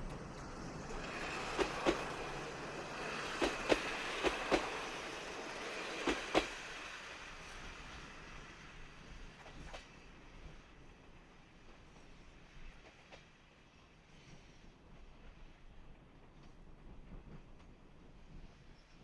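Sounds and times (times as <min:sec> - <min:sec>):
train wheels clacking over rail joint: 0:00.0 - 0:07.6
train running hiss: 0:00.0 - 0:10.7.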